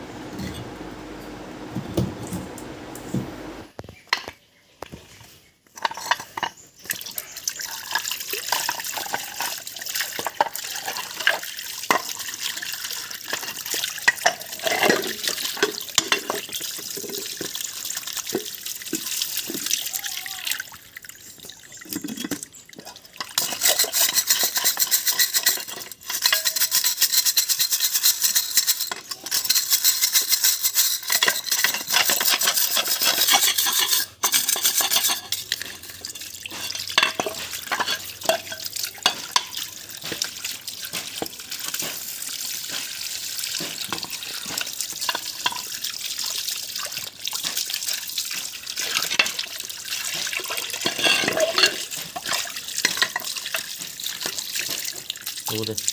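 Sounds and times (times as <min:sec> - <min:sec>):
brush scrubbing with water: 0:23.2 - 0:55.9.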